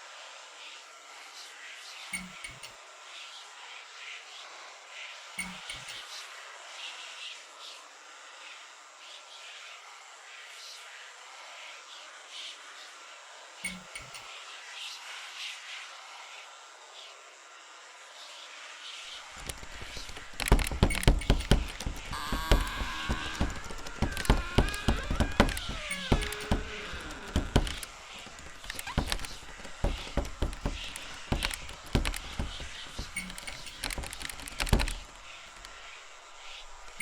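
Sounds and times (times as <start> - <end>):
loud knocks and thuds: 19.4 - 35.8.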